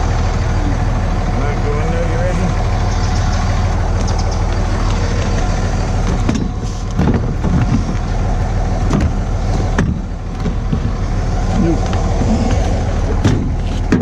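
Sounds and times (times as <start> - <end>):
vehicle engine and road noise: 0.0 - 14.0
sharp knocks and rattles: 2.8 - 11.2, 11.8 - 14.0.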